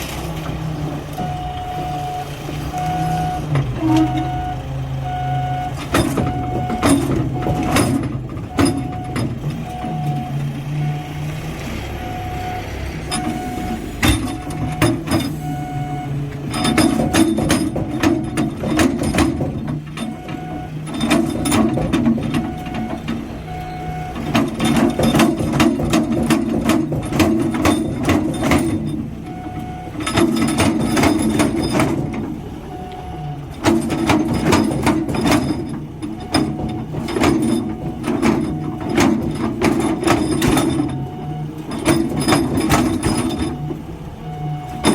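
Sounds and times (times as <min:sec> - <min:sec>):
loud rattling and clanking: 0:00.0 - 0:10.5, 0:13.0 - 0:44.0, 0:44.7 - 0:44.9
heavy machinery running: 0:00.0 - 0:44.9
short beeping alarm: 0:01.2 - 0:07.9, 0:12.0 - 0:18.5.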